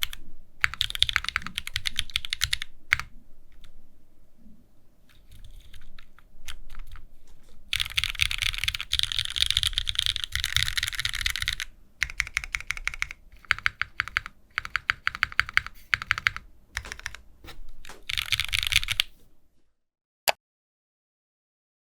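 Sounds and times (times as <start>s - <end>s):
mechanical keyboard typing: 0.0s - 3.7s, 5.1s - 7.1s, 7.7s - 17.2s, 17.8s - 19.1s.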